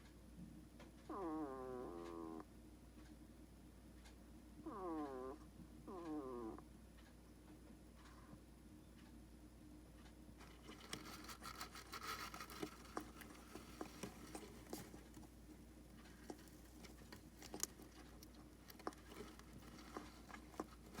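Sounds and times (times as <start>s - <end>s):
hedgehog snoring: 1.1s - 2.4s, 4.7s - 6.6s, 16.1s - 21.0s.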